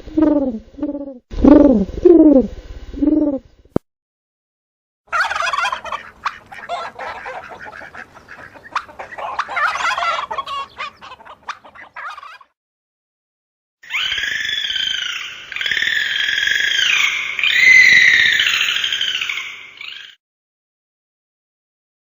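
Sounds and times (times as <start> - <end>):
turkey gobbling: 5.1 - 12.5
bird calls: 5.2 - 12.5, 13.9 - 20.2.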